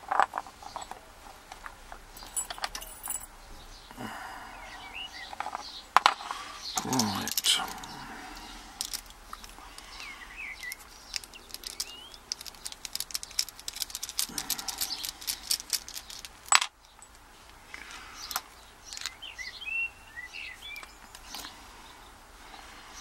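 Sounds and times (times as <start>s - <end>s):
birds chirping: 0.0s - 23.0s
metallic clicking of padlock and tools: 2.2s - 3.3s, 5.3s - 17.2s, 18.2s - 19.2s.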